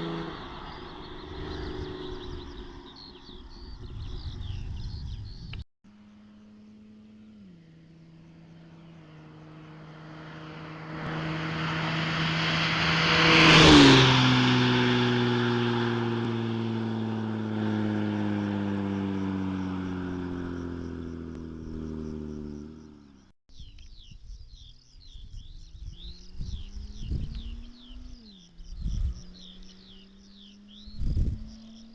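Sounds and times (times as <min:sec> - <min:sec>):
birds chirping: 0:00.0 - 0:05.6, 0:16.0 - 0:31.9
car engine driving past: 0:06.1 - 0:23.2.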